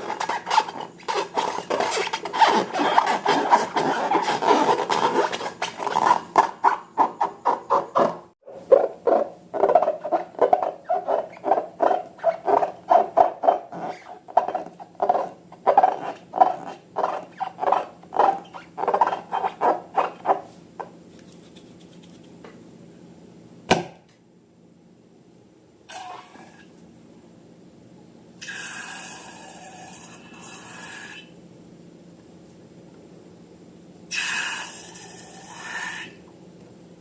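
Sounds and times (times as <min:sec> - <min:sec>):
faint steady hum: 0:08.2 - 0:37.0.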